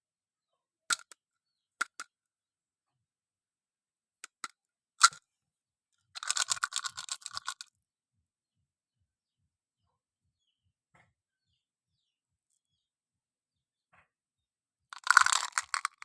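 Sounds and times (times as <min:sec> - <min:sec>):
candy wrapper crinkling: 0:06.2 - 0:07.6, 0:15.0 - 0:16.0
candy wrapper clicks and taps: 0:15.0 - 0:16.0.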